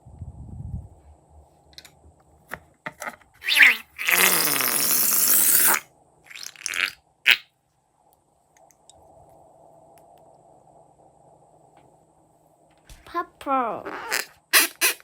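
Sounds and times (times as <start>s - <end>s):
air blasting from balloon neck: 3.4s - 5.8s, 13.9s - 15.0s
short squirts: 3.4s - 7.4s, 13.9s - 15.0s.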